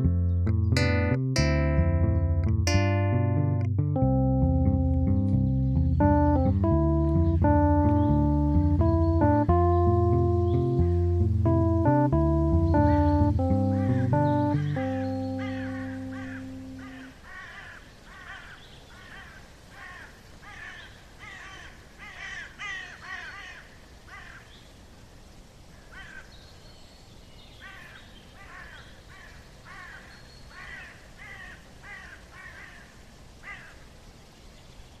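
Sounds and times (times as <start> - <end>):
music: 0.0 - 17.0
crows cawing: 13.8 - 24.5, 25.8 - 26.3, 27.6 - 33.8.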